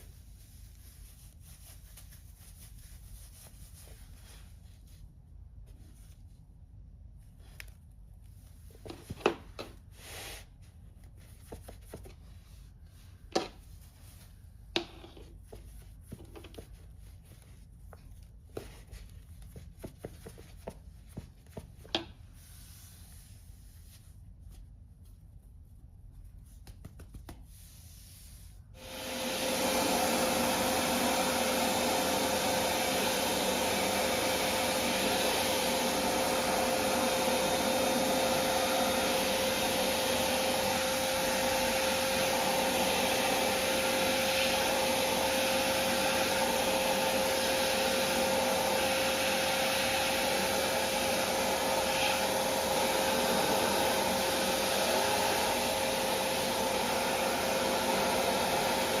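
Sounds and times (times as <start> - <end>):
vacuum cleaner running: 28.8 - 59.0.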